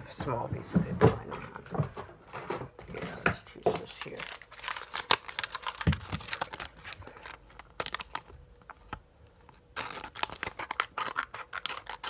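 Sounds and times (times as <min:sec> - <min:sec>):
paper rustle: 0:02.3 - 0:12.0
small scissors cutting paper: 0:09.8 - 0:12.0.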